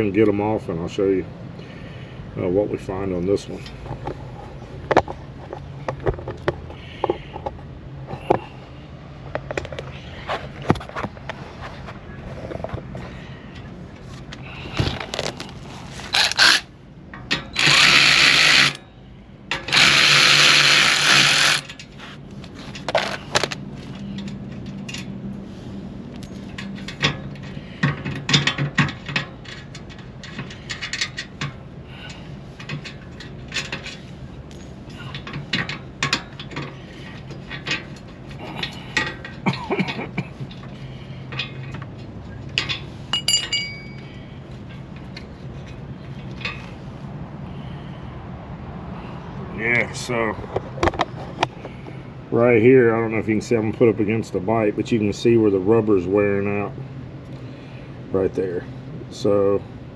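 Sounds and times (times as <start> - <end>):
power tool spinning nuts off: 16.1 - 16.6, 17.5 - 18.8, 19.6 - 21.7
tools and metal parts clinking: 19.5 - 25.2, 26.2 - 46.7.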